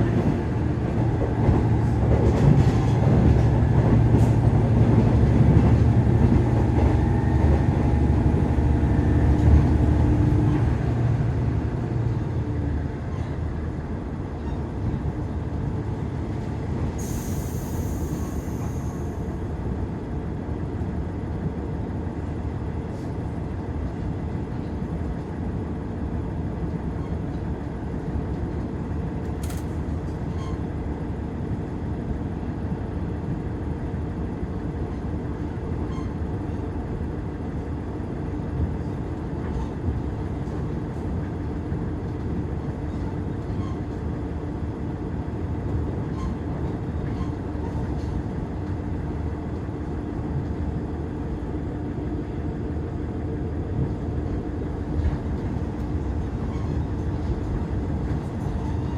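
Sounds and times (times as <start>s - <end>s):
railcar engine and wheels rumbling: 0.0s - 58.9s.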